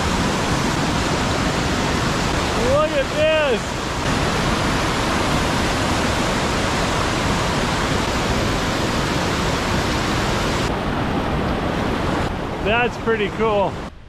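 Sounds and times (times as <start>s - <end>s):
rushing water: 0.0s - 14.0s.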